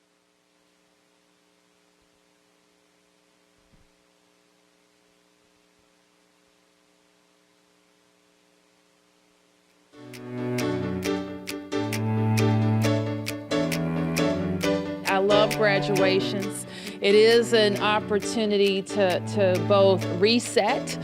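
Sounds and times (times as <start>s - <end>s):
faint electrical hum: 0.0s - 12.8s
music: 10.0s - 21.0s.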